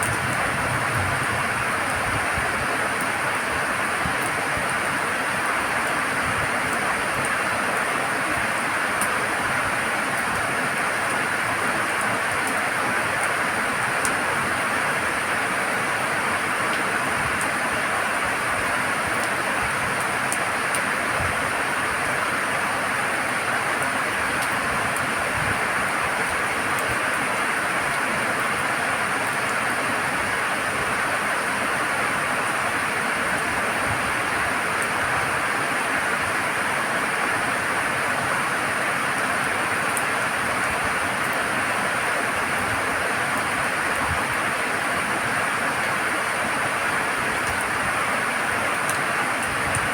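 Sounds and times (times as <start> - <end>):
steady rain falling: 0.0 - 49.9
raindrop ticks: 9.0 - 9.2, 47.4 - 47.7, 48.7 - 49.9.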